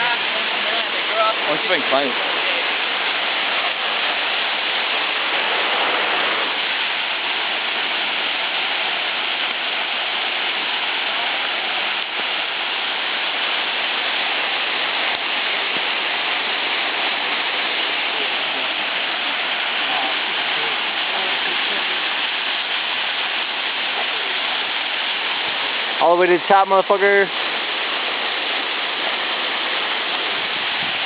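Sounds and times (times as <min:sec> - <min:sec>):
waterfall rushing: 0:00.0 - 0:31.0.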